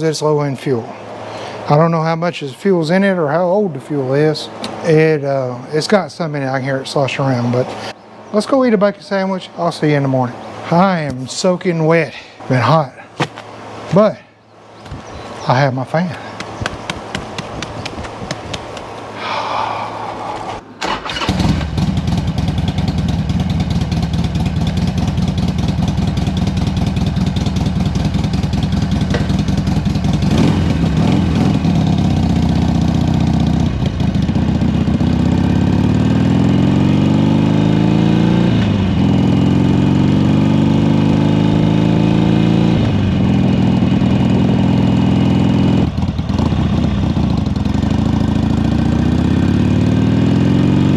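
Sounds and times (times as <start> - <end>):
motorcycle engine revving: 14.8 - 50.9.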